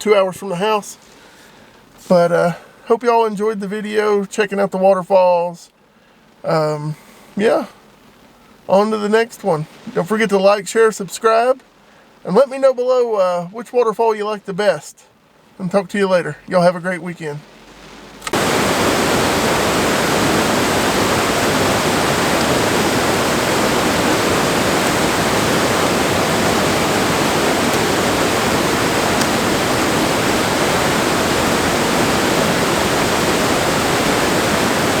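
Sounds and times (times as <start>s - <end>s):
waterfall pouring: 18.3s - 35.0s.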